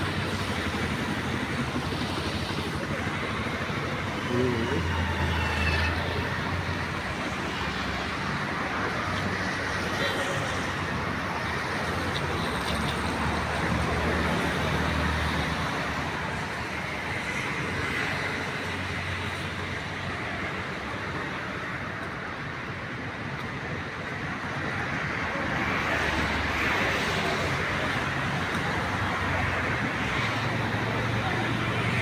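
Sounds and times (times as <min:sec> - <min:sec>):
road traffic droning: 0:00.0 - 0:32.0.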